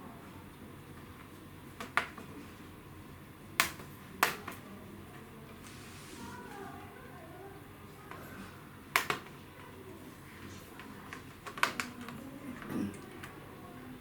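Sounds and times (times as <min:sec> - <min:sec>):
plastic clicks and taps: 0:01.8 - 0:02.2, 0:08.9 - 0:09.3, 0:10.8 - 0:12.2.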